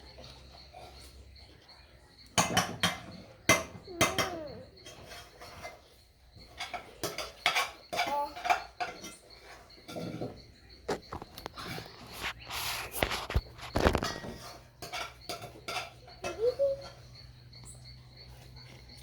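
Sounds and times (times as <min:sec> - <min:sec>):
dishes and cutlery clattering: 0:02.4 - 0:12.4, 0:13.1 - 0:17.1.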